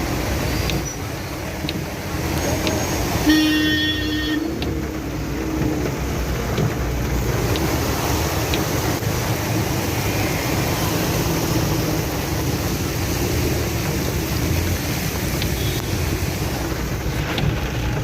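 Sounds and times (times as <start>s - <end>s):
heavy rain and water wash: 0.0s - 18.0s
vehicle engines running: 0.0s - 18.0s.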